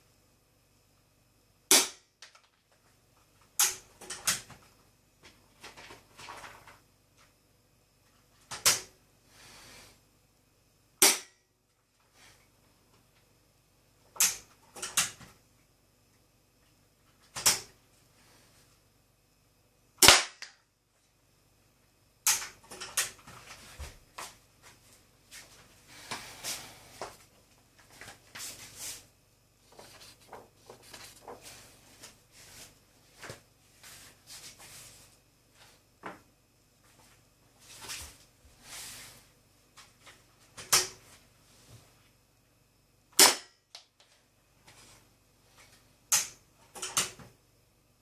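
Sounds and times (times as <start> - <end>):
toy pistol shots: 1.7 - 2.0, 11.0 - 11.4, 20.0 - 20.6, 43.2 - 43.6.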